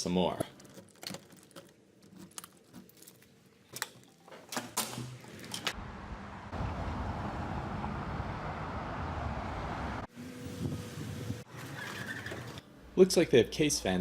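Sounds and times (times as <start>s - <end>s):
car road and engine rumble: 5.7s - 11.5s.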